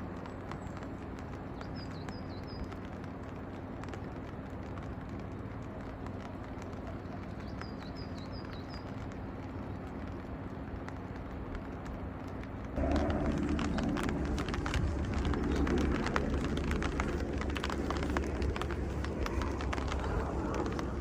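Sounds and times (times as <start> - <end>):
light ticks: 0.0 - 21.0.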